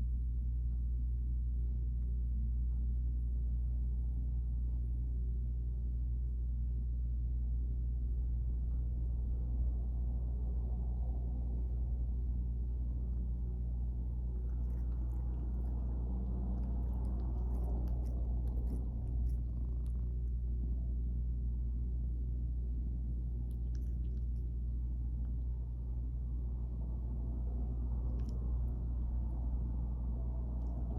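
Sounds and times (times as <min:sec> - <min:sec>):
cat purring: 0:08.5 - 0:30.9.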